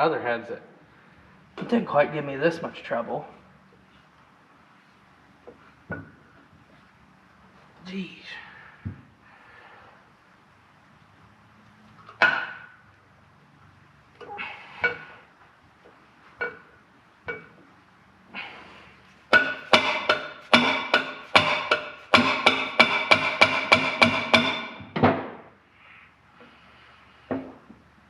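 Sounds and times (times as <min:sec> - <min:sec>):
hammer striking metal: 0:19.3 - 0:25.2.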